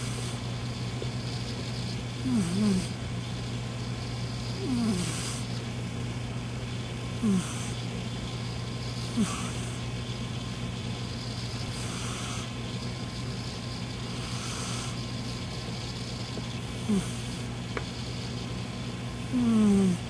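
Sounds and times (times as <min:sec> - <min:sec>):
steady low hum: 0:00.0 - 0:20.0
cat snoring: 0:02.2 - 0:03.0, 0:04.4 - 0:05.6, 0:07.2 - 0:07.8, 0:09.1 - 0:09.8, 0:11.7 - 0:12.5, 0:16.8 - 0:17.4, 0:19.3 - 0:20.0.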